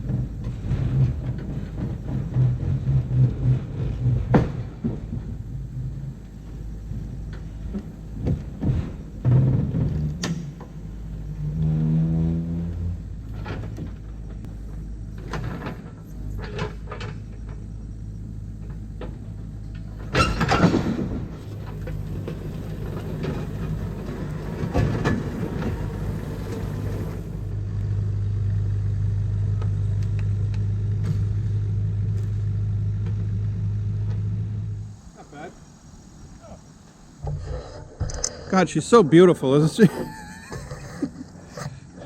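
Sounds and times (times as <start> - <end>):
knocks and clanks: 0.0 - 12.0, 12.6 - 17.8, 18.6 - 27.6
engine running: 0.0 - 38.2.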